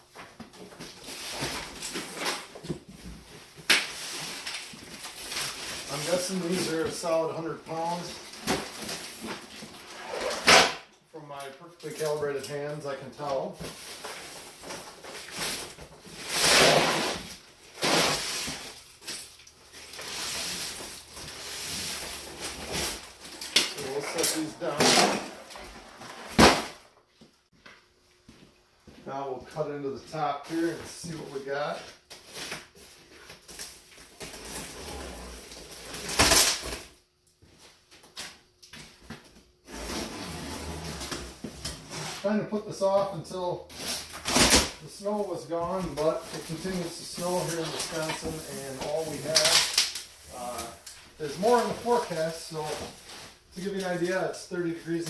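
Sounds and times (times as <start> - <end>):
rustling and scraping of packaging: 0.0 - 10.8, 11.7 - 27.3, 30.4 - 55.0
packaging scraping and rustling: 13.6 - 26.8, 43.7 - 54.2.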